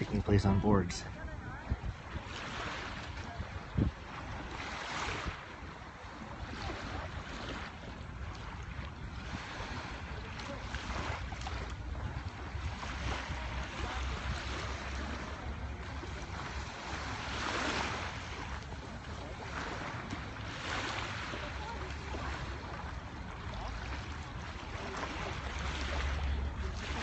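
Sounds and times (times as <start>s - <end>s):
surf washing onto beach: 0.0s - 27.0s
wind buffeting microphone: 0.0s - 27.0s.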